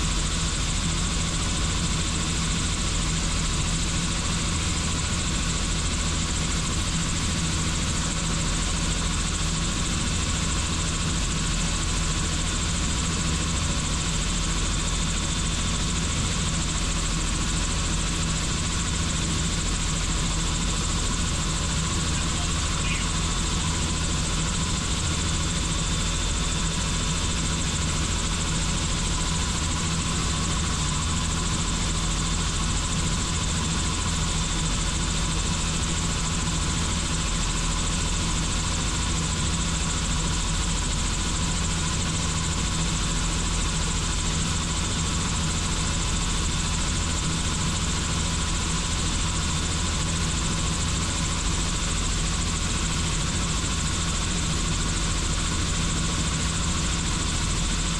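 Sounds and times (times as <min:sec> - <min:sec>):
helicopter rotor and engine drone: 0:00.0 - 0:57.9
faint high tone: 0:22.2 - 0:23.2.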